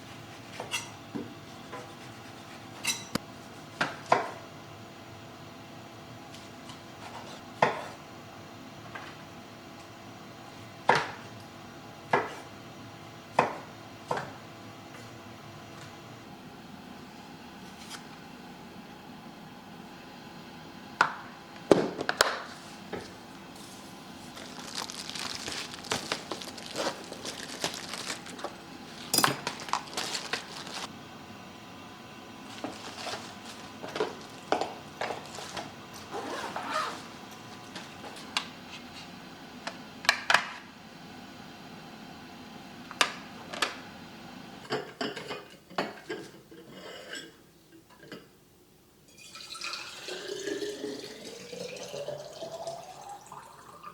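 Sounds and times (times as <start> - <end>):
hard objects clinking and knocking: 29.1 - 30.1.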